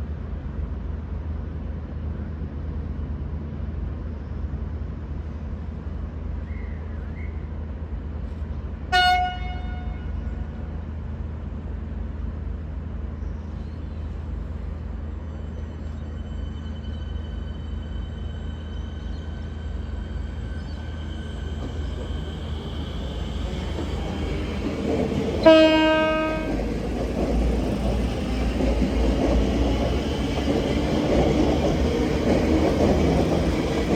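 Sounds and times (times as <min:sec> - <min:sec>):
train horn toot: 0:08.9 - 0:10.4, 0:25.4 - 0:26.6.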